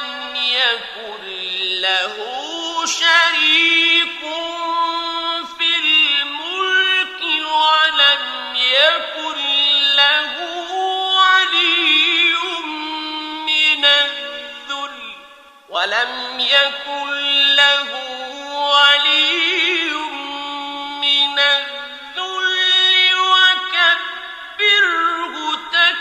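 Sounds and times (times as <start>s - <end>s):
man reciting melodically: 0.0s - 26.0s.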